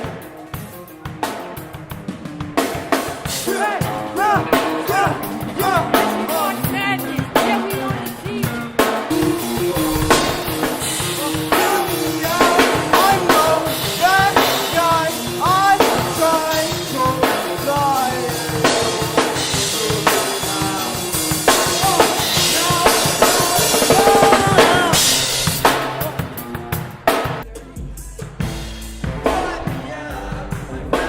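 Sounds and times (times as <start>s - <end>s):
drum kit beat: 0.0s - 31.0s
electric guitar bending notes: 1.8s - 27.0s.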